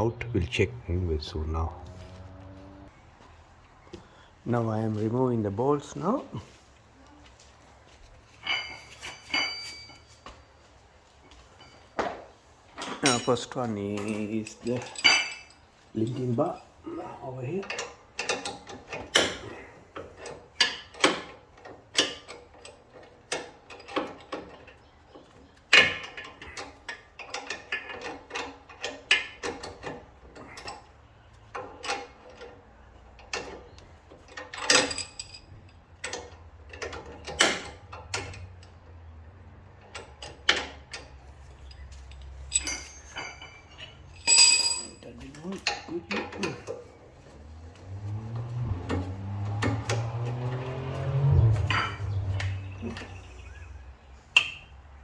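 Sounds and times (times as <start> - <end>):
metal tools clicking and clanking: 8.3 - 10.3, 12.7 - 54.8.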